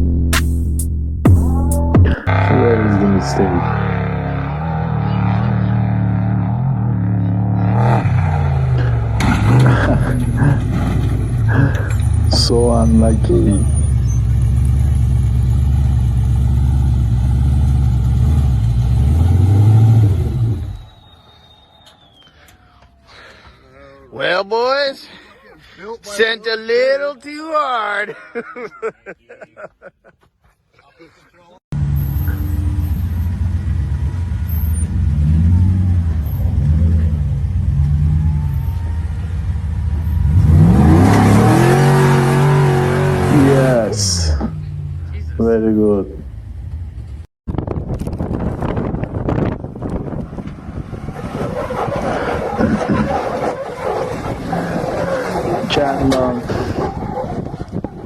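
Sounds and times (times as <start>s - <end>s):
engine revving under load: 2.0s - 22.6s, 31.7s - 47.2s, 48.7s - 58.0s.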